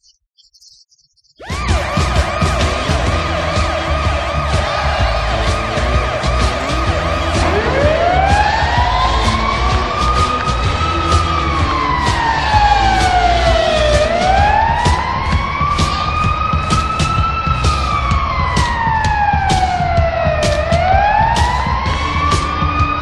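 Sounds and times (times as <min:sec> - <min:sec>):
hockey goal siren wailing: 0:01.4 - 0:23.0
low rumble: 0:01.6 - 0:23.0.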